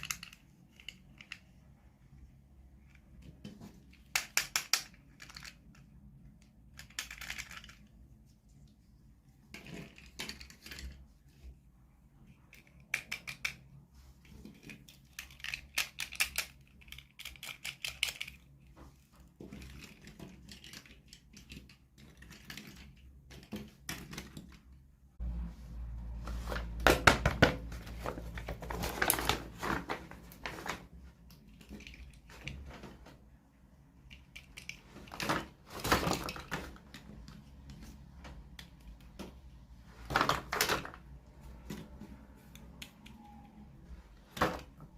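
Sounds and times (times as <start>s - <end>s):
plastic toy pieces clicking: 0.0s - 1.6s, 2.8s - 8.0s, 9.5s - 11.1s, 12.5s - 18.7s, 19.4s - 24.7s, 34.0s - 37.9s
plastic clatter: 26.4s - 33.4s, 34.0s - 43.4s.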